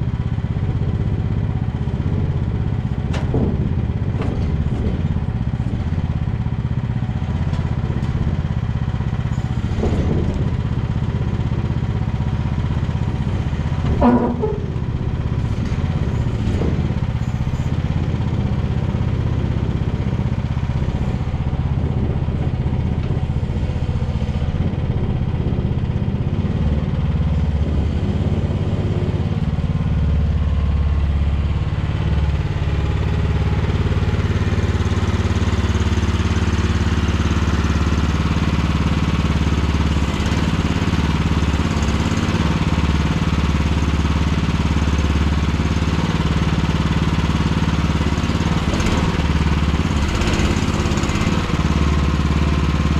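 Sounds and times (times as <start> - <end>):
mini excavator engine running: 0.0 - 52.9
loud metallic clank: 13.8 - 17.7.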